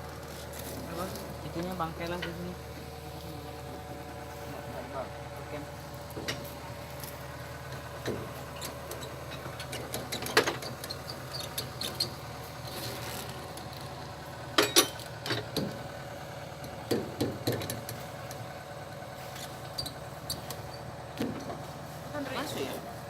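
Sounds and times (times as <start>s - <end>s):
low engine hum: 0.0s - 23.0s
sharp clicks and knocks: 16.6s - 18.4s.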